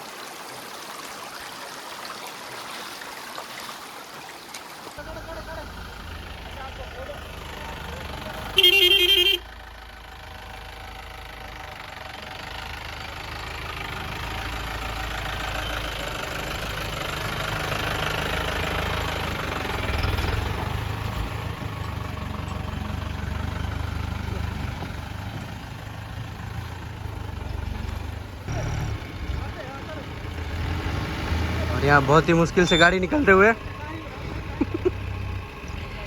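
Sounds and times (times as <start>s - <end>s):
vehicle engine running: 5.0s - 36.0s.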